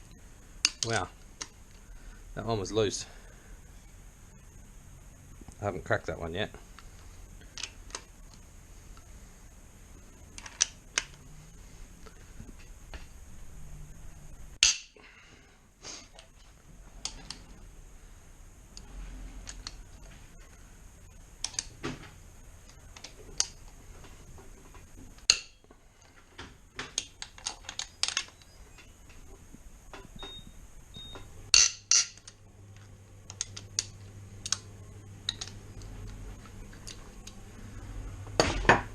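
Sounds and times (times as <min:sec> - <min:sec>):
metallic clicks of hand tools: 0:14.6 - 0:15.0, 0:25.2 - 0:25.6.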